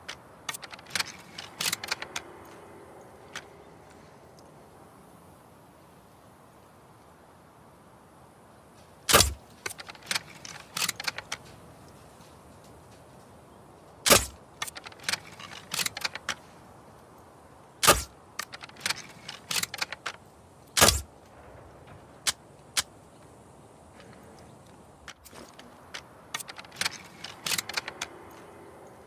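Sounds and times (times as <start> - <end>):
mechanical clicks and rattles: 0.0 - 4.4, 9.1 - 12.0, 14.1 - 16.4, 17.8 - 21.1, 25.1 - 29.0
crossbow shot snap: 17.8 - 18.1.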